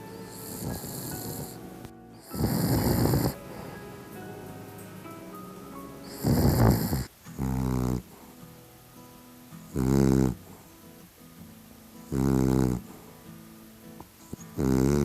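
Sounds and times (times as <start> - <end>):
dog snoring: 0.0 - 3.8, 6.0 - 8.4, 9.7 - 10.8, 12.1 - 13.2, 14.3 - 15.0
dog snorting: 0.4 - 1.6, 2.2 - 3.4, 6.1 - 8.4, 9.7 - 10.8, 12.1 - 13.1, 14.3 - 15.0.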